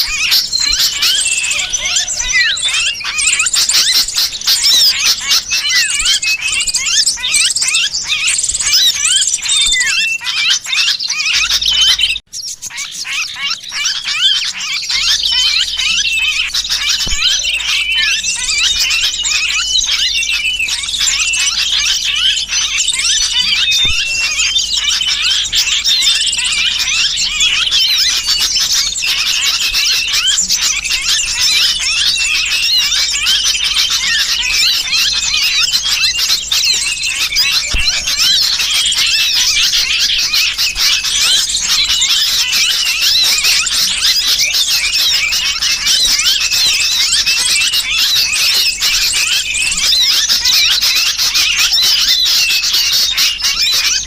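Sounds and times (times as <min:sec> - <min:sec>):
bird distress calls: 0:00.0 - 0:54.0
small birds chirping: 0:00.0 - 0:54.0.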